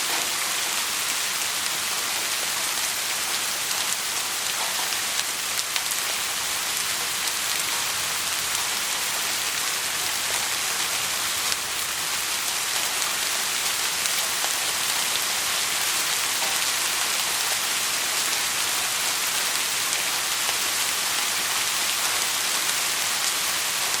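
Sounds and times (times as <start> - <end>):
rain falling: 0.0 - 24.0.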